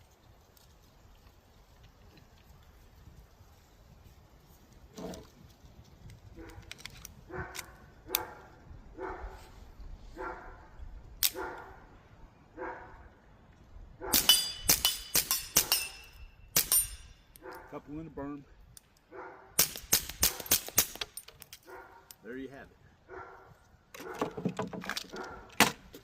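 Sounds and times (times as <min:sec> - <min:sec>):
dog barking: 0:07.3 - 0:09.4, 0:10.2 - 0:10.7, 0:11.4 - 0:11.9, 0:12.6 - 0:13.1, 0:17.4 - 0:17.8, 0:19.1 - 0:19.6, 0:21.7 - 0:22.1, 0:23.1 - 0:24.3, 0:25.1 - 0:25.5
metallic ring: 0:14.2 - 0:17.3
suppressed pistol shots: 0:19.6 - 0:21.2.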